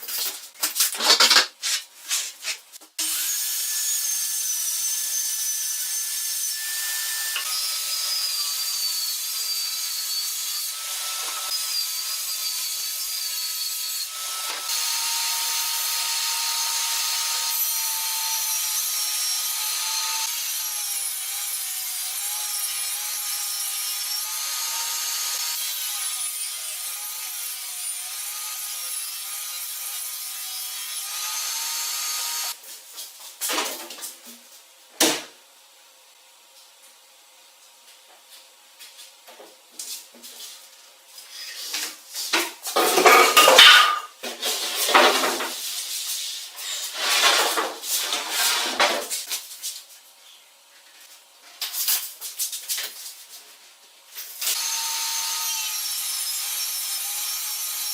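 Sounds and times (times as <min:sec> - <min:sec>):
power tool cutting wood: 0:03.0 - 0:32.6, 0:54.3 - 0:57.9.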